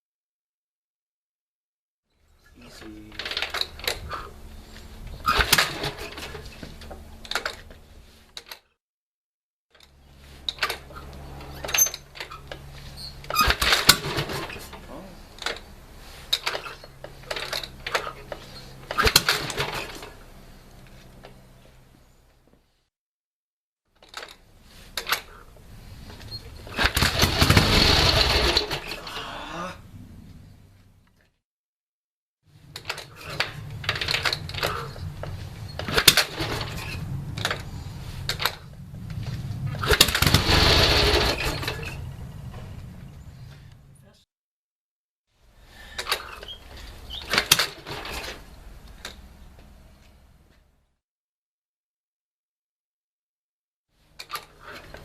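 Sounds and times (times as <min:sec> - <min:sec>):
engine pops: 0:26.2 - 0:29.0, 0:32.8 - 0:43.3
sharp metallic clicks and clanks: 0:32.7 - 0:37.7, 0:39.8 - 0:42.1.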